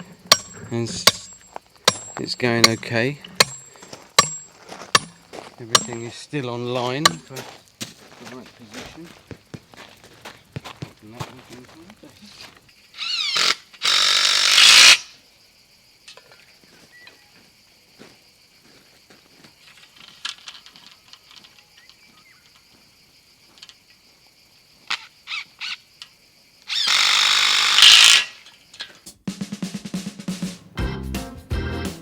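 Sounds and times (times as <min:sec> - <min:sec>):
power drill running in spurts: 0:13.1 - 0:15.0, 0:26.7 - 0:28.4.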